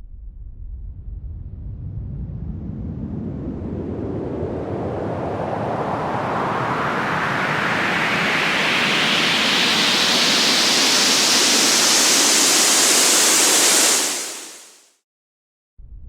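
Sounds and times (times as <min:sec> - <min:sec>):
rising white noise sweep: 0:02.9 - 0:14.9.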